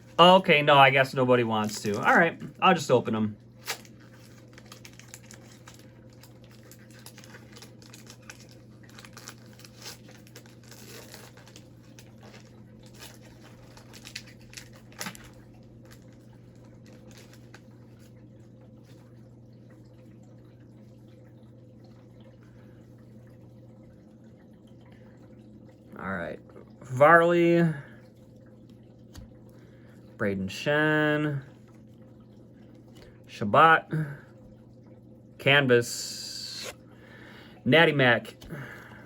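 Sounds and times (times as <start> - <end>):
steady low hum: 0.0 - 39.0
wrapper tearing and crinkling: 3.6 - 16.2, 16.8 - 17.6.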